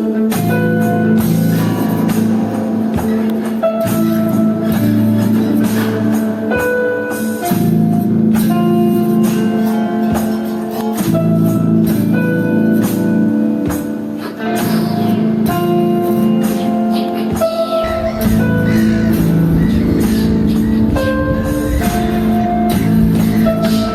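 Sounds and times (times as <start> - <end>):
music with steady beat: 0.0 - 23.9.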